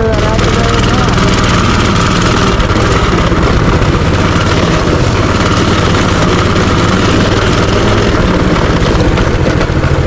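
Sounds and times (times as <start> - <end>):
small engine running: 0.0 - 10.0.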